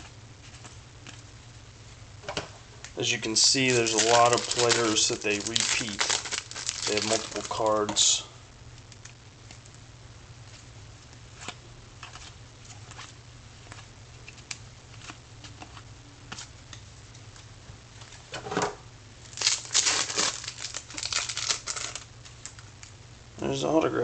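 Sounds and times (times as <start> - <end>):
cards crinkling and rustling: 0.4 - 1.3, 3.0 - 8.2, 8.8 - 9.8, 11.4 - 18.2, 19.3 - 22.9
cards flicking and ticking: 3.4 - 8.1, 10.5 - 17.5.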